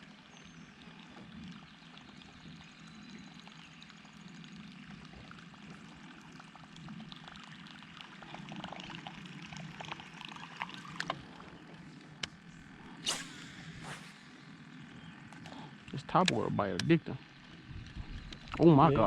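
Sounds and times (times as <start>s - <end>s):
water gurgling and splashing: 0.0s - 14.6s
steady low hum: 0.0s - 19.0s
sharp clicks: 16.2s - 17.0s.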